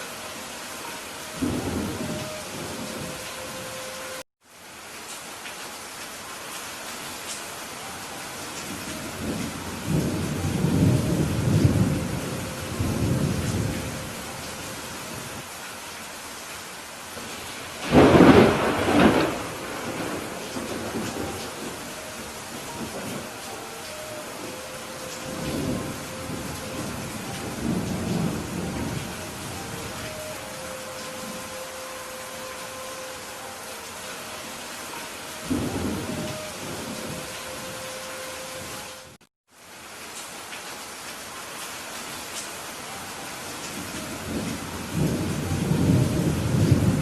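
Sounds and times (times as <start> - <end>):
steady rain hiss: 0.0 - 47.0
thunder rumbling: 1.4 - 3.7, 8.7 - 15.4, 17.2 - 32.7, 35.0 - 37.8, 43.8 - 47.0.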